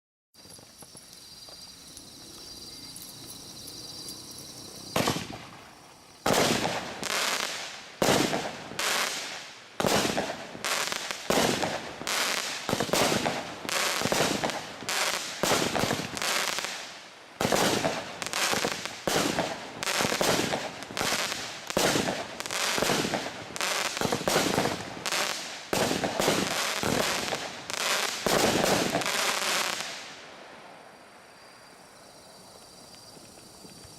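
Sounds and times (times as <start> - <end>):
fireworks barrage bangs: 4.9 - 16.8, 17.4 - 30.1.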